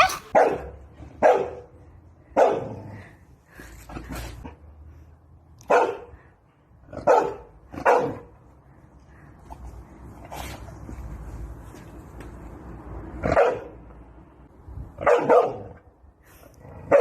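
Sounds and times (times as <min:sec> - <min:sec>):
dog barking: 0:00.0 - 0:00.6, 0:01.2 - 0:01.6, 0:05.7 - 0:06.1, 0:07.0 - 0:08.3, 0:13.3 - 0:13.7, 0:15.0 - 0:15.8.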